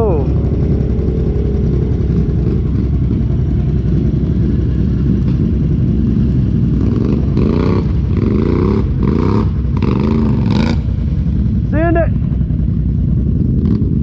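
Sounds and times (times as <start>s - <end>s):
off-road vehicle engine revving: 0.0s - 14.0s.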